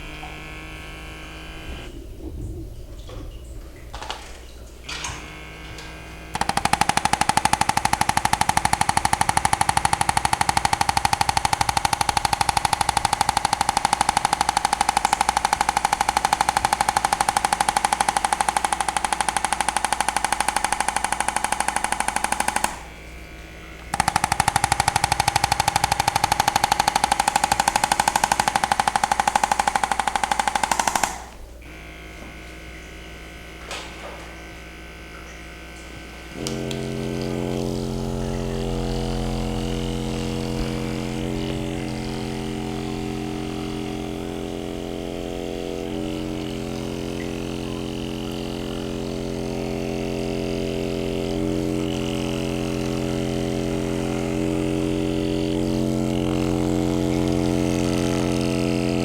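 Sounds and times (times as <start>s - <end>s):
steady motor hum with tones: 0.0s - 59.0s
rapid pulsing rattle of device: 5.2s - 31.8s, 36.1s - 59.0s.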